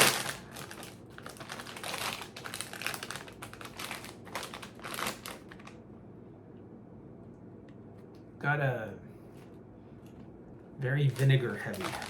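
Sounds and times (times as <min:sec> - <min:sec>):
plastic chip bag crackling: 0:00.0 - 0:05.8, 0:11.0 - 0:12.0.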